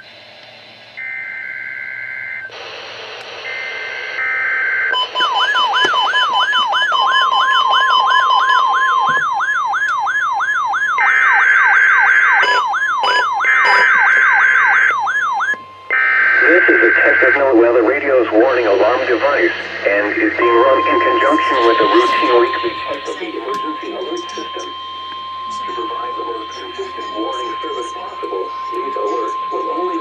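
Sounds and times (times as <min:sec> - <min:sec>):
steady warning alarm tone: 0:01.0 - 0:02.6, 0:03.4 - 0:30.0
siren sweeping up: 0:03.4 - 0:30.0
warbling data bursts: 0:11.0 - 0:30.0.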